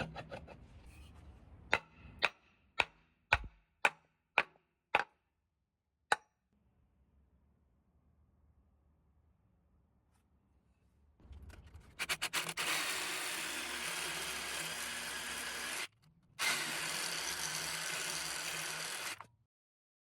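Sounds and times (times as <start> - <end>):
power tool running: 12.2 - 19.3.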